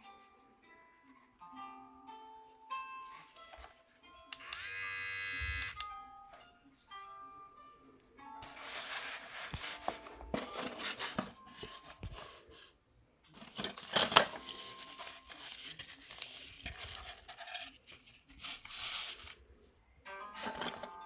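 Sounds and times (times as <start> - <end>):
packaging rustling and crinkling: 13.3 - 19.4.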